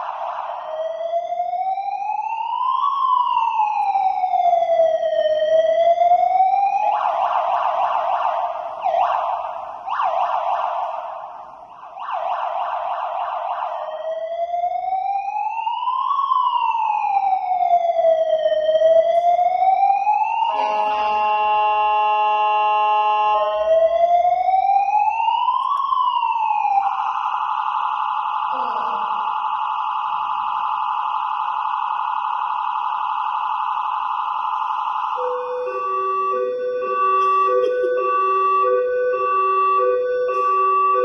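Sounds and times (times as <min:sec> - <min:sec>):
emergency vehicle siren wailing: 0:00.0 - 0:41.0
rapid warbling siren tone: 0:35.1 - 0:41.0.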